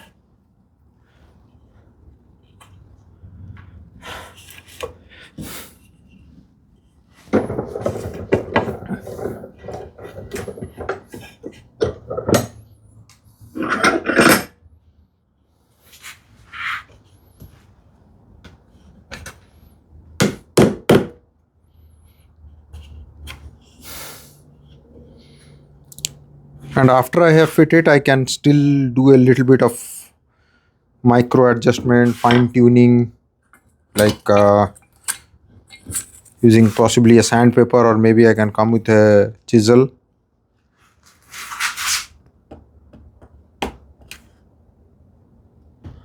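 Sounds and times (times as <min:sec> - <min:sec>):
handling and rubbing noise: 0:04.4 - 0:14.4, 0:15.8 - 0:19.7, 0:31.7 - 0:32.6, 0:40.7 - 0:43.2.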